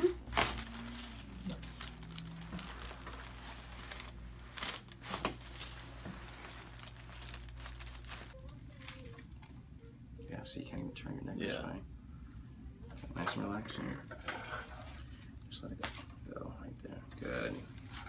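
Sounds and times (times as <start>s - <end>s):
crinkling and rustling on table: 0.1s - 9.2s.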